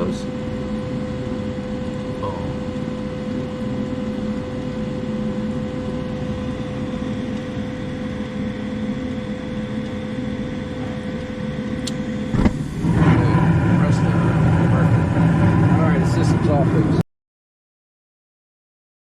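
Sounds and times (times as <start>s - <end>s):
constant hum tone: 0.0s - 17.0s
gas furnace rumbling: 5.0s - 17.0s.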